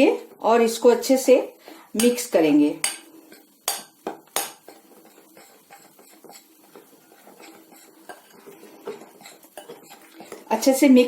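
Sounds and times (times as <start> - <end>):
spoon scraping in a bowl: 4.4 - 10.5.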